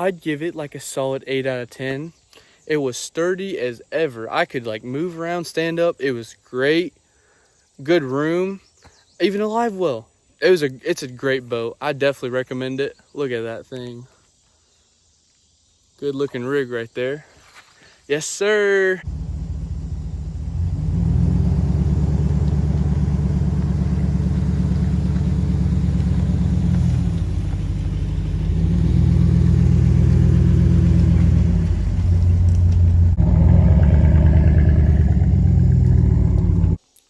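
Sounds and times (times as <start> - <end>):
vehicle engine droning: 19.0 - 36.8.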